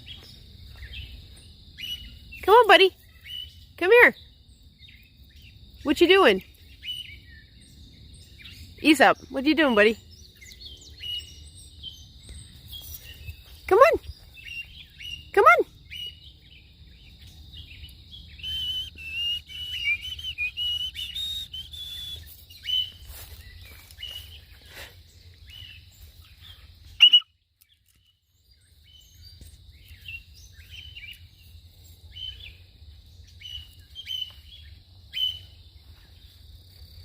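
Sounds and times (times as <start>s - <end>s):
cockatiel whistled chirps: 18.4s - 22.9s, 27.0s - 27.3s.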